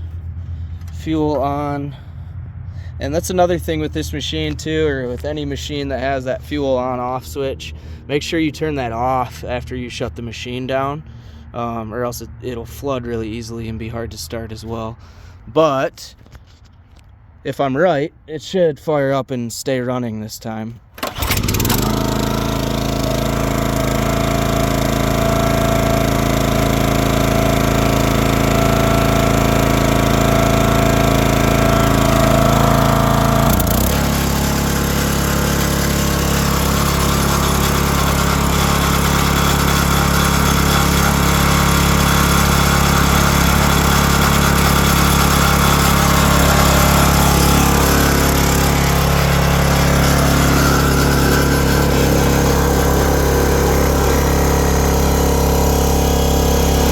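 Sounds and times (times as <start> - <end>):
small engine running: 21.0 - 56.9.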